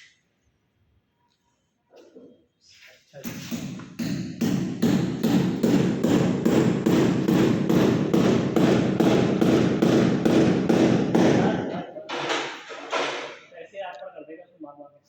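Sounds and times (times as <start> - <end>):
rapid hammer blows: 3.5 - 13.4.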